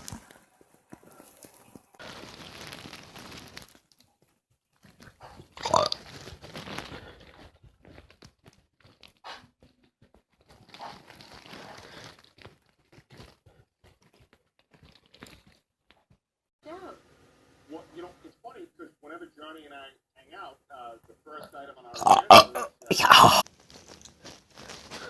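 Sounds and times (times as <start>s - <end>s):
person burping loudly: 5.6s - 6.0s, 22.0s - 23.4s.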